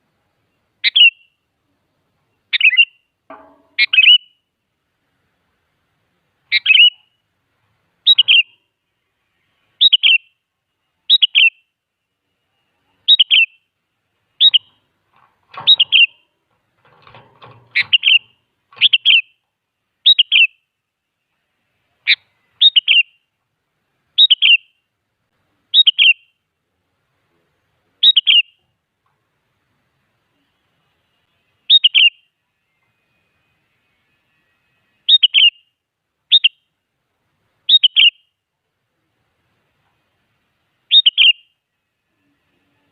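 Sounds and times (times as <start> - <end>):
bird chirping: 0.0 - 4.5, 6.4 - 7.3, 8.0 - 23.4, 24.0 - 25.0, 25.6 - 26.5, 28.0 - 28.8, 30.2 - 36.8, 37.6 - 38.4, 40.8 - 42.9.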